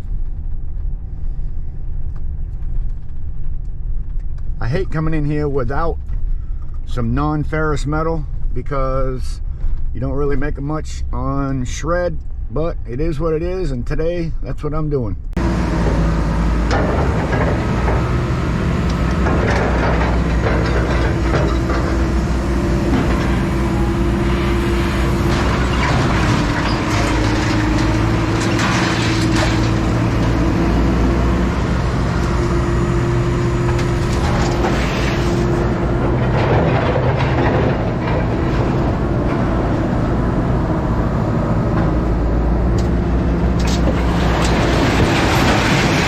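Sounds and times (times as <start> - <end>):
scrap steel clanking: 15.4 - 31.2, 33.6 - 40.0, 43.6 - 46.0
heavy diesel engine running: 15.4 - 46.0.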